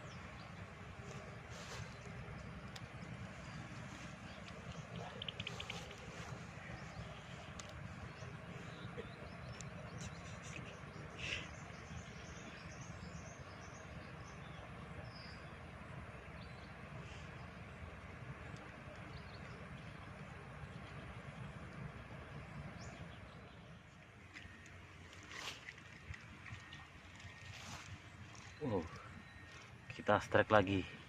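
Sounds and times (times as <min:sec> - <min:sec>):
bird chirps: 0:03.4 - 0:15.5.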